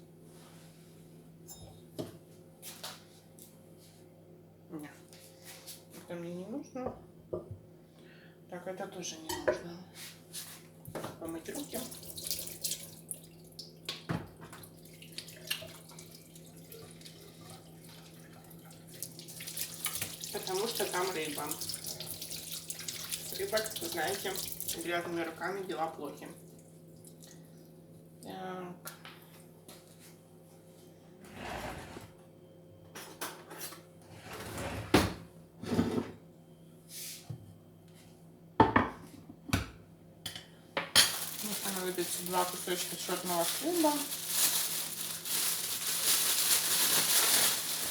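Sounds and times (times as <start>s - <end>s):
water splashing in a sink: 11.3s - 25.0s.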